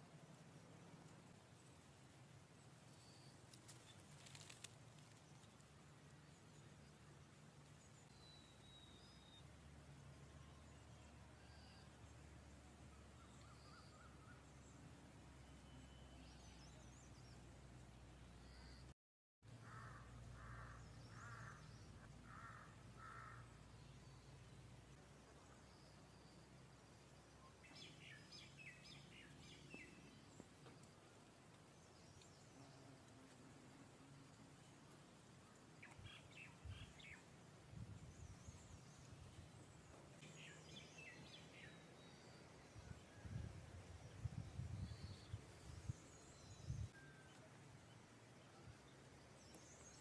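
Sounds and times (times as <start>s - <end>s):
songbirds chirping: 0.0s - 50.0s
faint high bird chirps: 8.0s - 9.5s, 15.4s - 17.5s, 44.1s - 48.8s.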